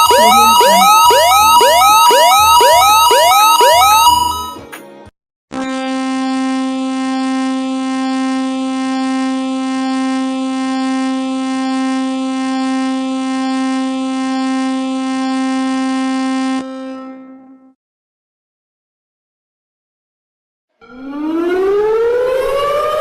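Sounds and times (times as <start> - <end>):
steady horn-like alert tone: 0.0 - 2.0.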